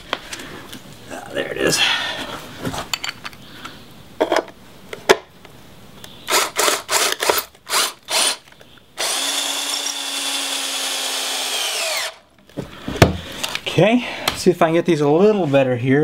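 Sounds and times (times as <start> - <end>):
power drill driving a screw: 6.3 - 8.4, 9.0 - 12.2.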